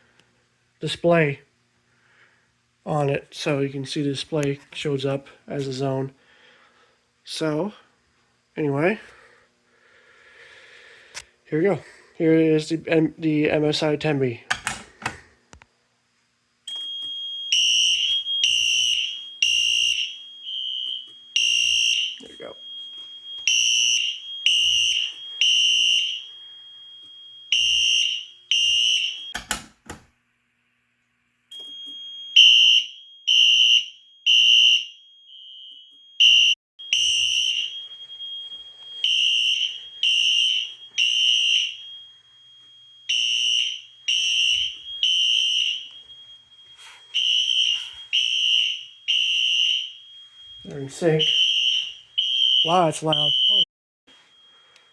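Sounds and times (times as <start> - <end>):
fire alarm horn blasts: 16.7 - 29.5, 31.5 - 53.7
steady high alarm tone: 16.7 - 29.6, 31.5 - 54.9.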